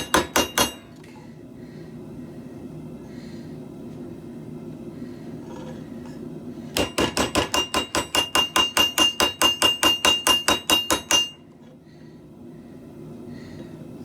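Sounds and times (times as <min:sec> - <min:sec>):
anvil ringing: 0:00.0 - 0:00.9, 0:06.8 - 0:11.4
hammer striking steel on anvil: 0:00.0 - 0:01.0, 0:06.8 - 0:11.5.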